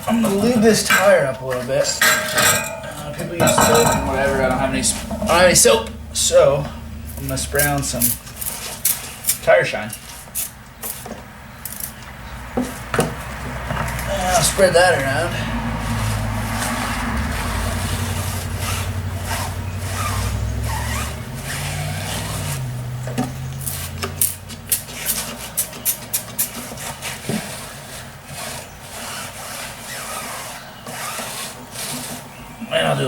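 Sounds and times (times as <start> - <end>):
low hum: 2.2 - 8.3
hands rubbing a tire: 7.1 - 12.0, 12.6 - 33.0.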